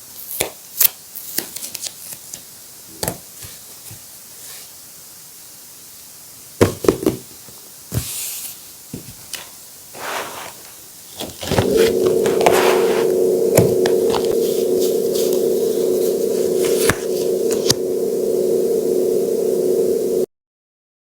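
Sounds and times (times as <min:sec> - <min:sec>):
steady droning hum: 0:11.5 - 0:20.3.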